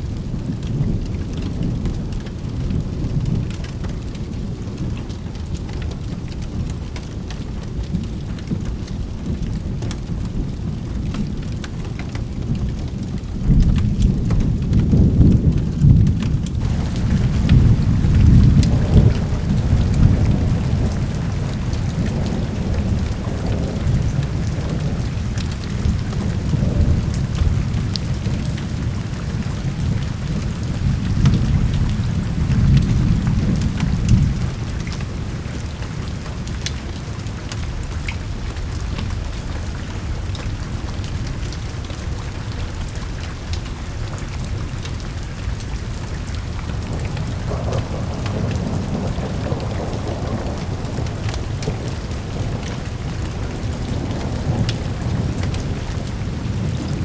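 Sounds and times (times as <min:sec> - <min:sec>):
steady rain: 0:00.0 - 0:57.0
rolling thunder: 0:12.3 - 0:43.6, 0:44.2 - 0:57.0.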